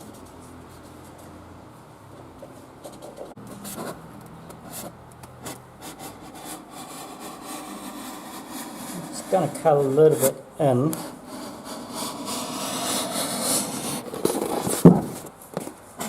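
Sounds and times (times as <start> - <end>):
scraping rasping cuts into lid: 5.5 - 15.2.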